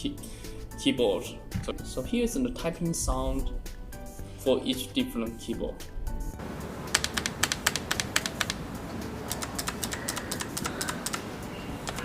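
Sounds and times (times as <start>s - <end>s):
mechanical keyboard key clicks: 6.9s - 8.6s, 9.3s - 12.0s.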